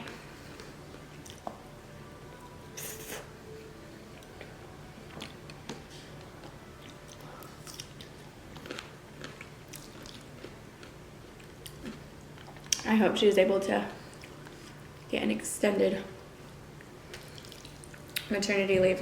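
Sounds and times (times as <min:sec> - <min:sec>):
person chewing food: 0:00.0 - 0:01.5, 0:04.2 - 0:12.8, 0:16.8 - 0:18.3.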